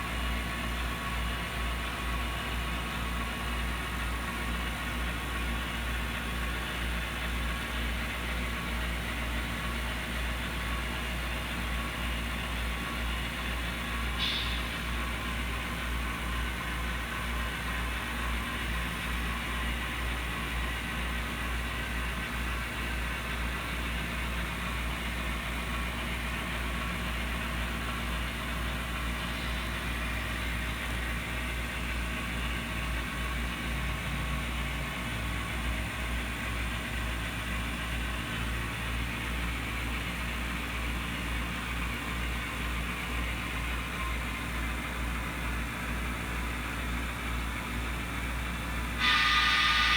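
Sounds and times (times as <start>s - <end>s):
model locomotive hum and drone: 0.0s - 49.9s
even hiss: 49.0s - 49.9s.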